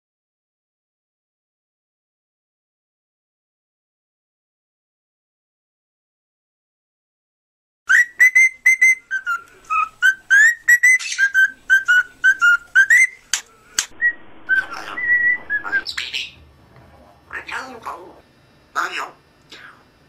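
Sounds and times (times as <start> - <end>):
parrot whistling: 7.9 - 16.4
short noisy sound: 13.4 - 16.7.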